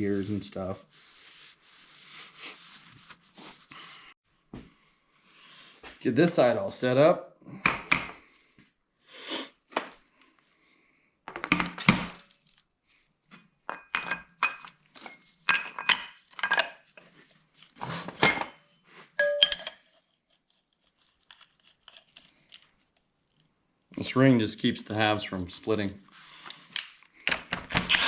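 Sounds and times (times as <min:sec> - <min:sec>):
steel tool parts clinking: 0:19.2 - 0:20.0.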